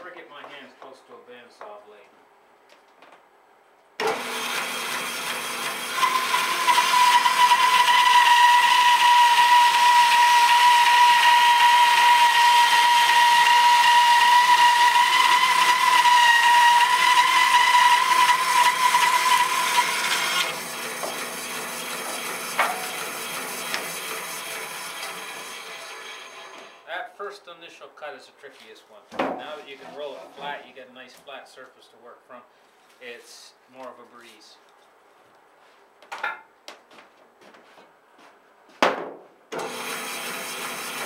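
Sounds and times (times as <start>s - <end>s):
bandsaw cutting log: 4.0s - 26.8s, 39.6s - 41.0s.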